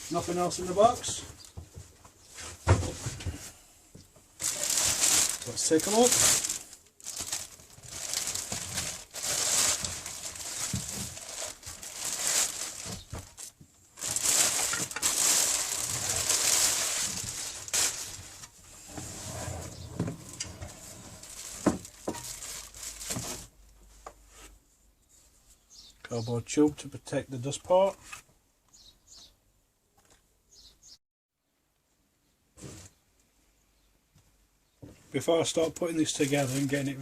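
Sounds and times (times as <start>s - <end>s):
packaging rustling and crinkling: 4.4s - 23.5s, 36.0s - 37.0s.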